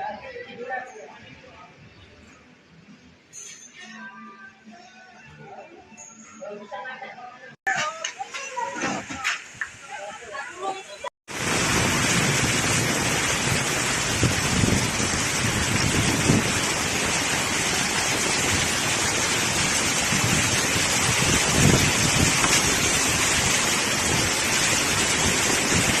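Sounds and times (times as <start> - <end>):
heavy rain: 10.8 - 26.0
wind gusts: 11.3 - 26.0.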